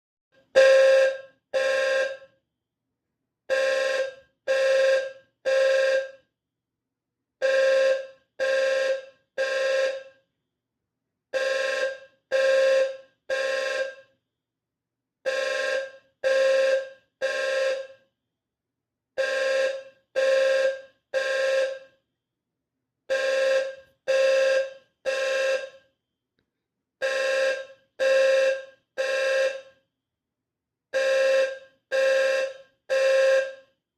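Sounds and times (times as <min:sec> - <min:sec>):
low-pitched fire alarm horn: 0:00.5 - 0:02.3, 0:03.5 - 0:06.2, 0:07.4 - 0:10.2, 0:11.3 - 0:14.1, 0:15.2 - 0:18.0, 0:19.2 - 0:22.0, 0:23.1 - 0:25.9, 0:27.0 - 0:29.8, 0:30.9 - 0:33.8.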